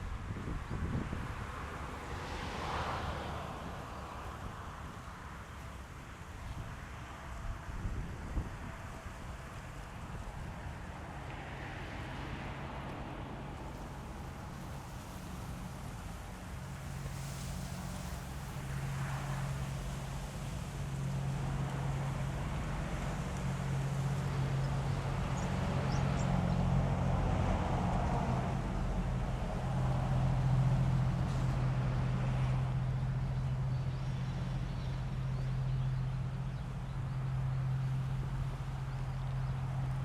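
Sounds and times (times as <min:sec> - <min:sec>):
wind buffeting microphone: 0:00.0 - 0:02.0, 0:07.4 - 0:10.7
rush of wind: 0:00.0 - 0:40.0.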